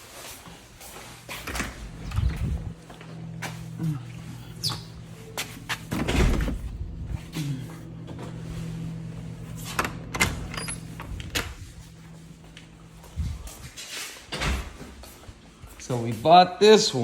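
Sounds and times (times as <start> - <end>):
steady low hum: 0.1 - 16.2.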